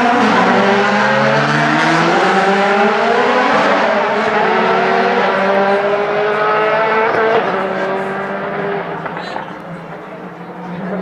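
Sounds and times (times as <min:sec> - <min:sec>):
race car engines accelerating: 0:00.0 - 0:11.0.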